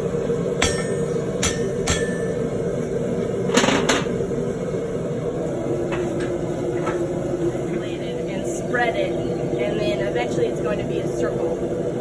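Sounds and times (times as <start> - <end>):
steady background hum: 0.0 - 12.0
hammer blows on hot steel: 0.5 - 2.7.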